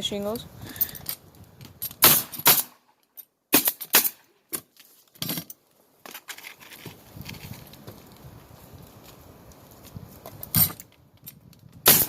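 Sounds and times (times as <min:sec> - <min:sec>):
nail gun firing: 0:02.0 - 0:02.8.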